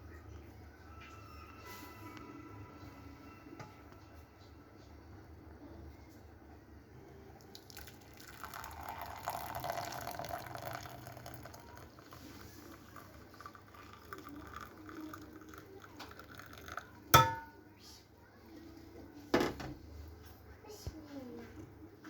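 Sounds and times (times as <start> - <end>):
tea pouring into cup: 7.4 - 17.6.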